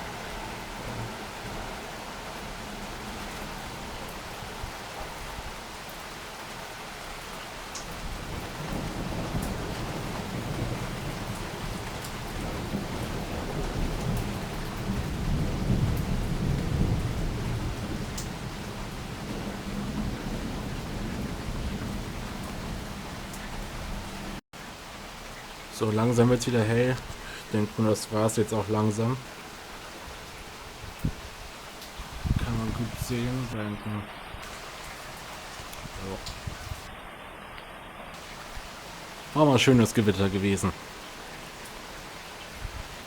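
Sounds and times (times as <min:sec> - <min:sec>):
heavy rain: 0:00.0 - 0:43.0
thunder rolling: 0:08.1 - 0:24.4.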